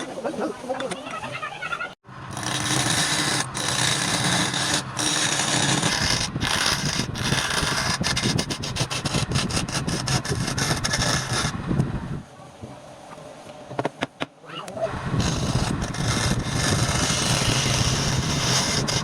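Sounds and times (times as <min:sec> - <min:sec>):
wood lathe hum: 0:02.3 - 0:11.5, 0:15.2 - 0:19.0
turning tool scraping wood: 0:02.3 - 0:11.6, 0:15.2 - 0:19.0.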